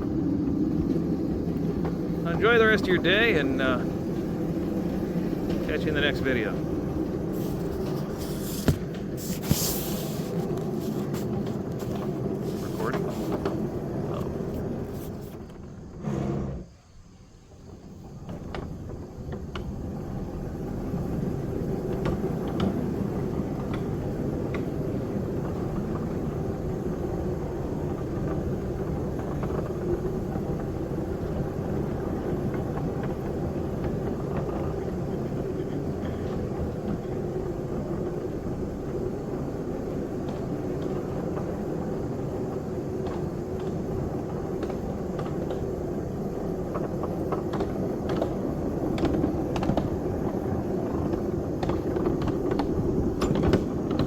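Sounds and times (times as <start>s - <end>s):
vehicle road noise: 0.0s - 16.8s
light rattles and knocks: 0.3s - 15.7s.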